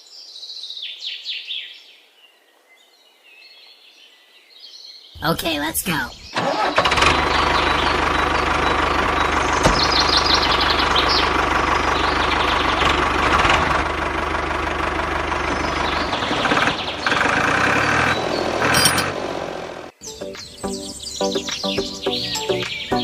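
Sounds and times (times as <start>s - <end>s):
small tractor engine running: 6.4s - 19.9s.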